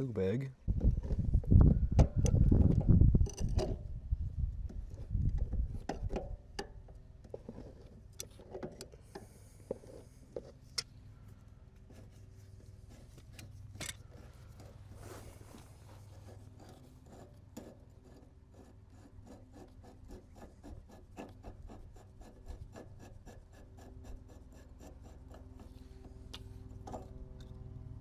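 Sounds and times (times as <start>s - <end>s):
steady low hum: 0.0s - 28.0s
pliers scraping clicks: 13.4s - 14.0s.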